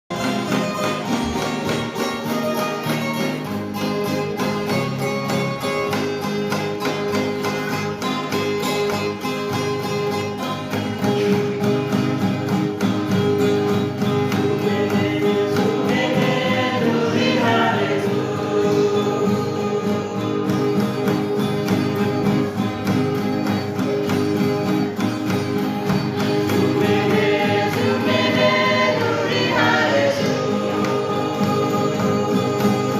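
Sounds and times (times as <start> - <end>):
guitar: 0.1 - 32.9
gospel choir singing: 13.9 - 23.8, 25.9 - 32.9.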